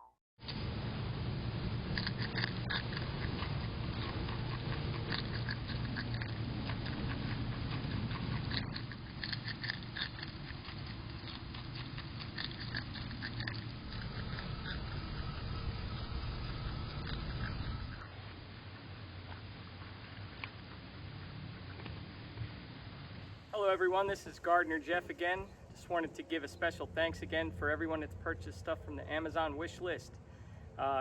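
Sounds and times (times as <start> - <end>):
steady low hum: 0.4 - 31.0
animal chewing food: 0.7 - 22.6.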